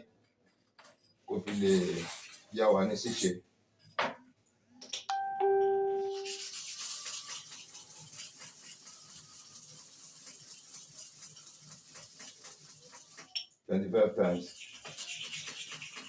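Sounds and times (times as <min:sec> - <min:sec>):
blade rubbing on sharpening stone: 0:01.5 - 0:03.3, 0:06.0 - 0:13.5, 0:14.2 - 0:16.0.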